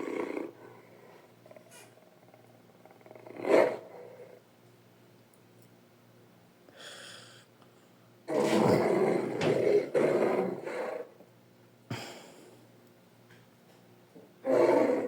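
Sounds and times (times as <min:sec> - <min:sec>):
breathy hiss: 0:06.7 - 0:07.6.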